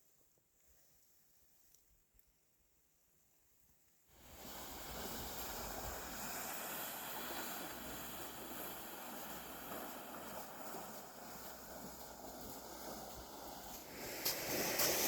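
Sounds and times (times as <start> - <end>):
wind rushing over microphone: 4.2 - 15.0.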